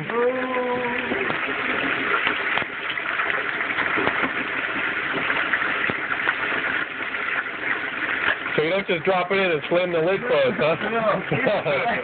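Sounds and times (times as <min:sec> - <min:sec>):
frying oil crackles and pops: 0:00.0 - 0:12.0
oil bubbling in deep fryer: 0:00.0 - 0:12.0.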